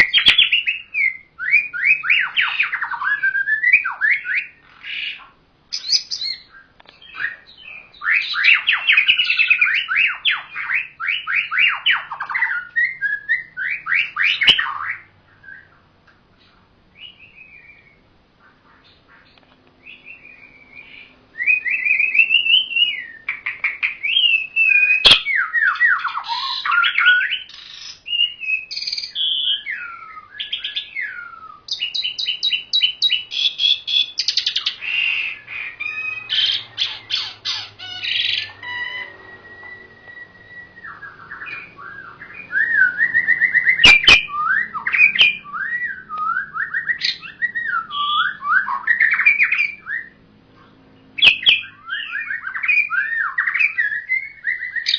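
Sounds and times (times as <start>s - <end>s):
birds singing whistles and trills: 0.0s - 54.9s.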